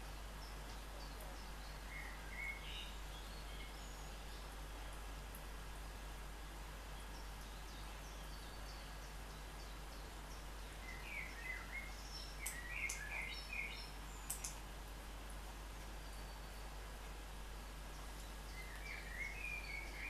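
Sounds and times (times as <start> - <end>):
small bird chirping: 7.0 - 14.6, 17.9 - 20.0.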